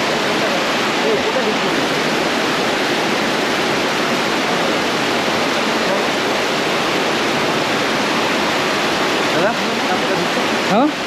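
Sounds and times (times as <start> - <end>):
waterfall roaring: 0.0 - 11.0.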